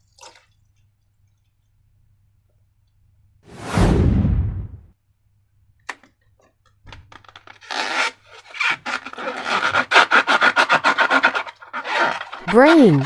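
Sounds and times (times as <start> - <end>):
rubber balloon rubbing: 7.4 - 13.0.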